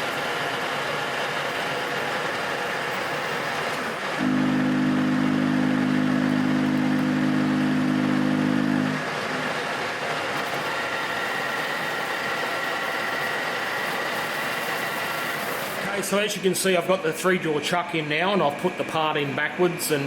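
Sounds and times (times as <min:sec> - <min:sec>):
lathe motor hum: 0:00.0 - 0:15.8
steady machine noise: 0:00.0 - 0:20.0
faint high whine: 0:04.2 - 0:09.1.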